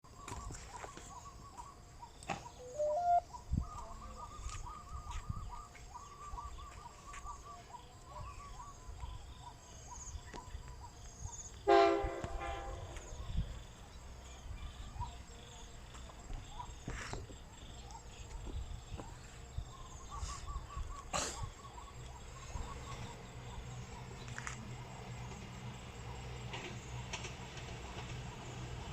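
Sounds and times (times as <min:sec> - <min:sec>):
faint chirping: 0:00.1 - 0:11.6
train horn: 0:11.6 - 0:13.2.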